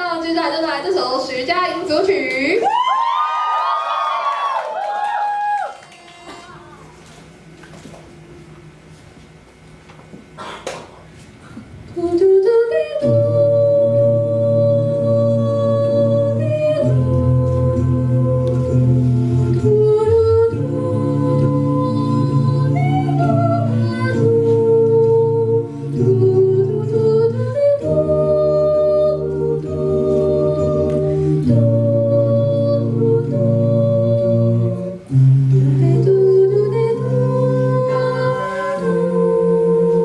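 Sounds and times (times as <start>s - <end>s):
choir singing a cappella: 12.1s - 40.0s.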